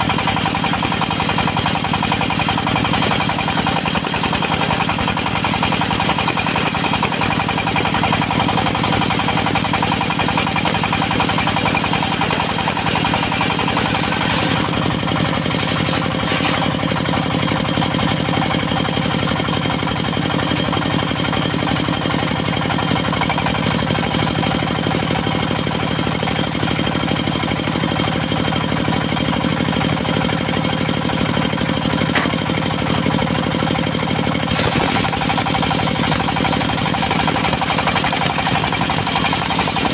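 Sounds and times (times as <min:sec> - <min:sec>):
sawmill diesel engine running: 0:00.0 - 0:39.9.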